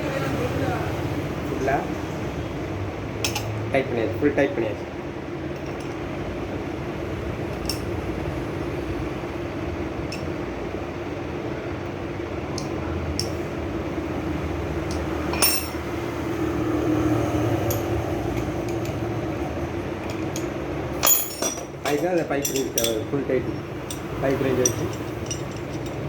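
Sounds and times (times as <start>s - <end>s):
steady background hum: 0.0s - 26.0s
metallic clinks of tap parts: 3.2s - 3.6s, 12.6s - 13.4s, 14.9s - 15.8s, 20.0s - 26.0s.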